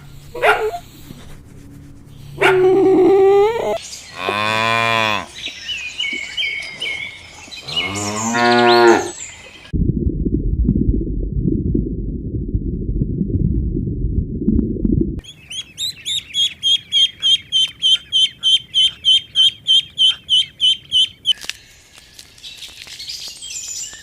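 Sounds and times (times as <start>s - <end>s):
cows mooing: 2.4s - 5.4s, 7.6s - 9.2s
muffled low rumbling: 9.7s - 15.2s.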